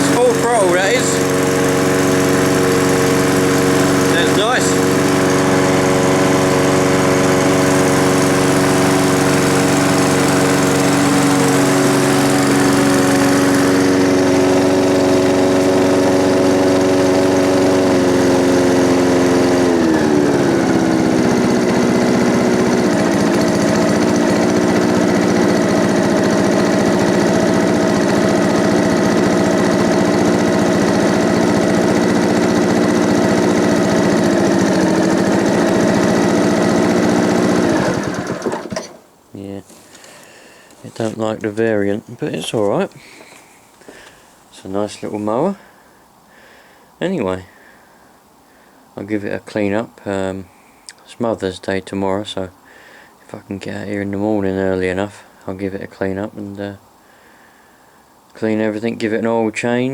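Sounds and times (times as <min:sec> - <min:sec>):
lawnmower engine running: 0:00.0 - 0:45.6.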